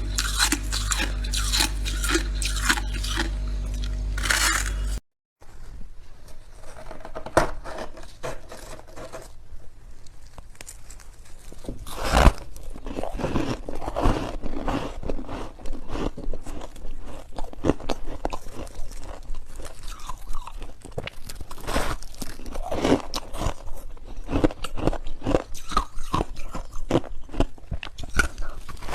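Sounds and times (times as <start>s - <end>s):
chewing frost squeaky crunches: 0.0s - 5.0s.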